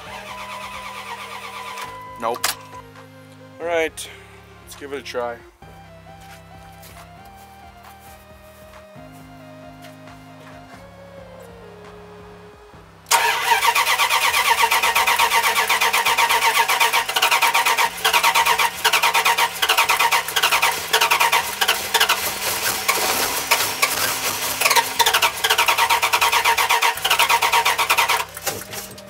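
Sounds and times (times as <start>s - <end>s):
truck engine cranking: 0.0s - 4.0s, 13.0s - 29.0s.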